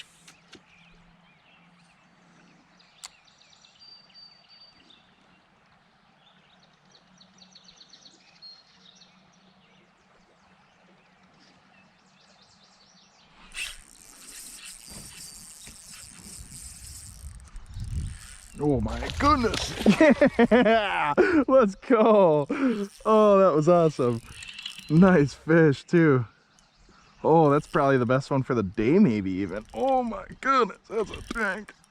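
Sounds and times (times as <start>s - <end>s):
fishing reel drag running: 0.0s - 1.0s, 13.2s - 21.4s, 22.3s - 25.5s, 26.6s - 31.9s
birdsong chirping: 0.0s - 31.9s.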